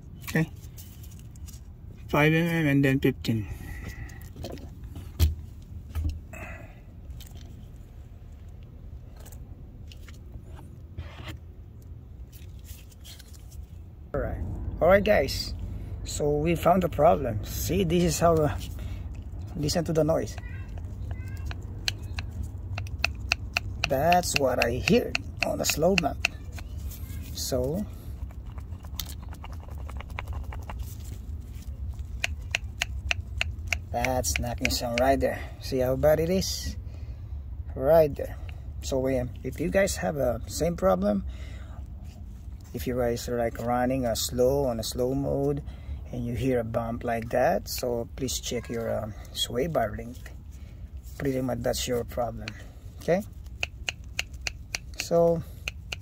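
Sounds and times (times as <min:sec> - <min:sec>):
low steady hum: 0:00.0 - 0:56.0
squeaky scrape: 0:10.5 - 0:11.4
ratchet clicking and scraping: 0:20.2 - 0:35.2, 0:53.4 - 0:56.0.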